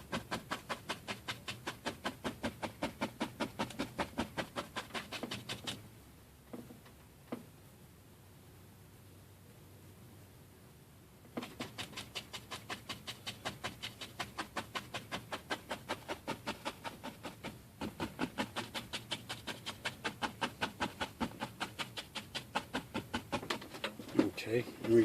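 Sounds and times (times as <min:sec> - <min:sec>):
paintbrush scrubbing on canvas: 0:00.0 - 0:05.8, 0:11.4 - 0:23.8.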